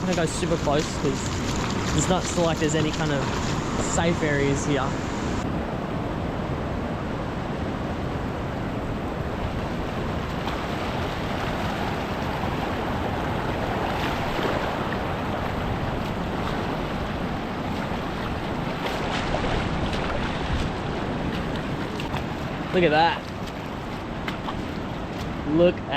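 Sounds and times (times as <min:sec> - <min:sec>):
ocean surf breaking over rocks: 0:00.0 - 0:06.7.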